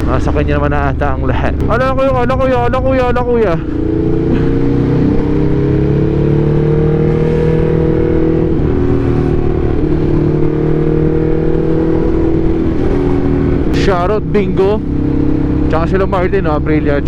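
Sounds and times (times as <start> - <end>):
motorcycle engine running: 0.0 - 17.0
wind rush on microphone: 3.6 - 15.7.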